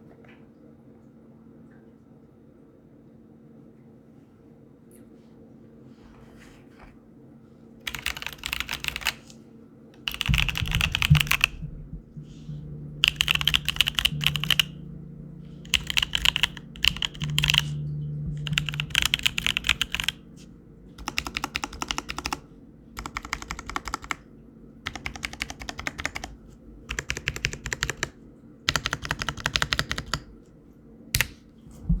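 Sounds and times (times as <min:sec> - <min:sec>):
mechanical keyboard typing: 0:07.9 - 0:09.3, 0:10.0 - 0:11.9, 0:13.0 - 0:14.8, 0:15.5 - 0:17.8, 0:18.4 - 0:20.2, 0:21.0 - 0:22.4, 0:23.0 - 0:24.2, 0:24.9 - 0:30.3, 0:31.2 - 0:31.4.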